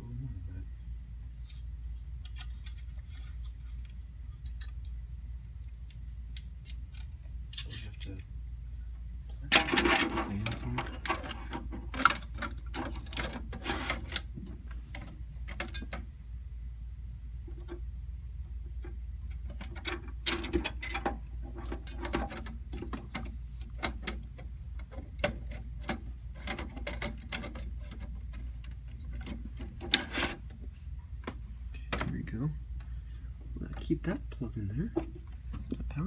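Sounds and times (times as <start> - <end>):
steady low hum: 0.0 - 36.0
plastic clicks and rustling: 9.5 - 16.1, 18.8 - 30.6.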